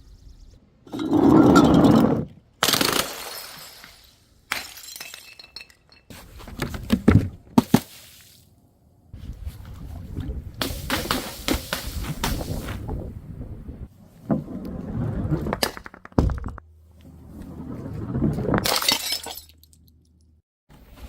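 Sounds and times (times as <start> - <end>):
glass shattering: 2.7 - 6.1, 18.6 - 19.7.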